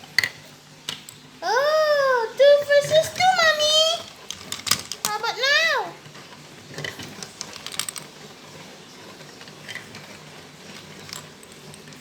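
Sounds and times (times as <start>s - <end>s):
marbles clicking on plastic track: 2.8s - 5.6s, 6.7s - 8.2s.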